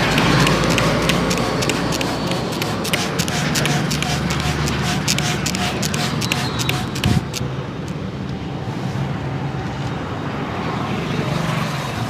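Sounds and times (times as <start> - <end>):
sharp taps: 0.0 - 7.4
low rumble of street traffic: 0.0 - 12.0.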